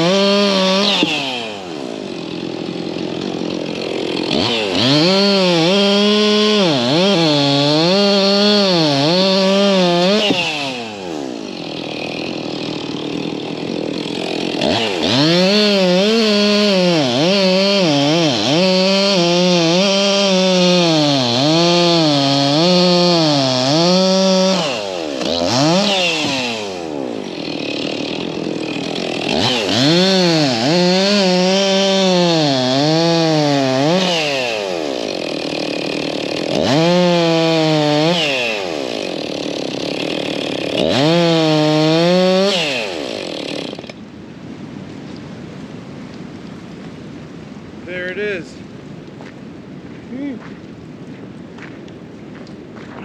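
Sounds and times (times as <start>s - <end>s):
chainsaw cutting wood: 0.0s - 44.1s.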